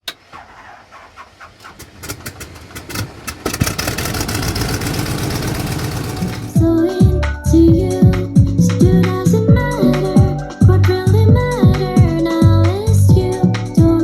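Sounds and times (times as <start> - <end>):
music with a beat: 6.6 - 14.0.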